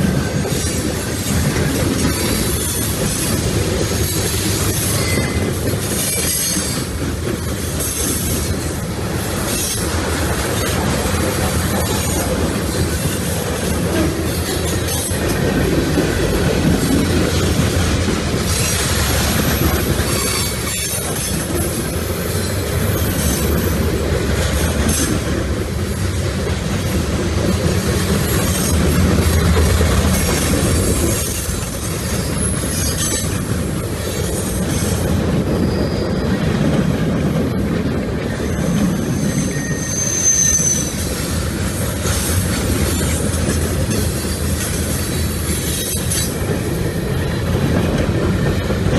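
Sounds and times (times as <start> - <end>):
train wheels squealing: 0.0 - 15.5, 18.4 - 23.9, 30.0 - 36.9, 38.2 - 47.7
wheels clicking over rail joints: 0.0 - 35.6
freight train wheels rumbling: 0.0 - 48.9.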